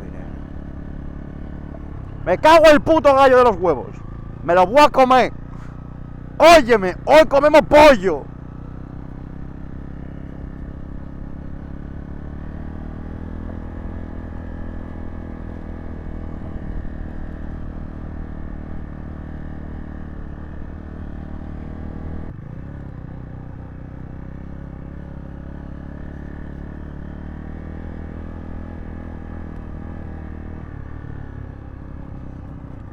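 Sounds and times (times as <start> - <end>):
motorcycle engine running: 0.0 - 32.9.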